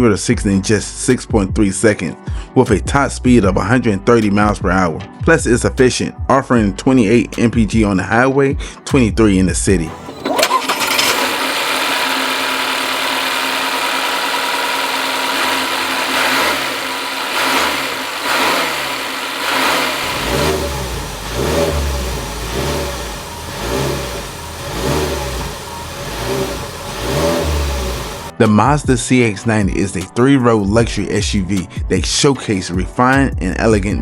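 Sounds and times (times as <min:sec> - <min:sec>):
car engine revving: 0:09.9 - 0:28.3.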